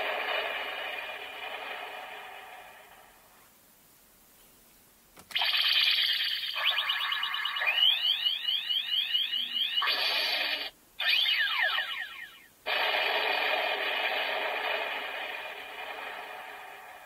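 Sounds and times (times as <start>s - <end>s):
toy belt electronic sound effect: 5.3s - 16.6s.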